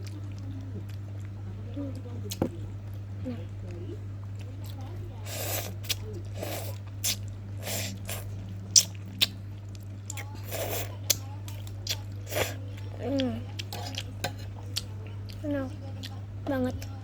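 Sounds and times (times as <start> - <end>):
steady low hum: 0.0 - 17.0
chewing noodles: 3.7 - 17.0
slurping noodles: 5.3 - 8.3.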